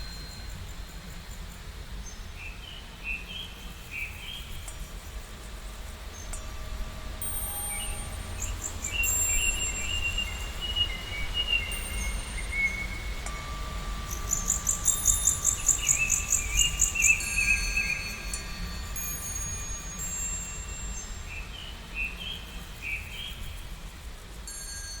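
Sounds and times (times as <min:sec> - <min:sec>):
steady low rumble: 0:04.4 - 0:22.8.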